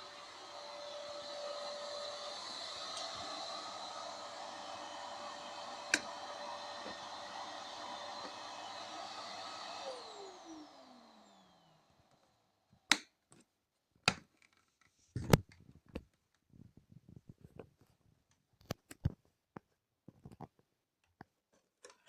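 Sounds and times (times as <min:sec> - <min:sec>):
vacuum cleaner motor winding down: 0:00.0 - 0:12.8.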